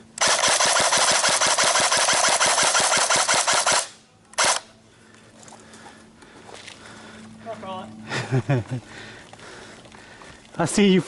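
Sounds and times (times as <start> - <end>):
airsoft gun firing full-auto: 0.2 - 4.7.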